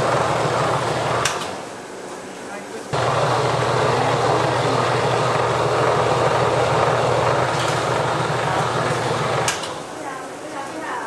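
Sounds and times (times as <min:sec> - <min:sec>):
kitchen machine motor whirring: 0:00.0 - 0:01.6, 0:03.0 - 0:09.9.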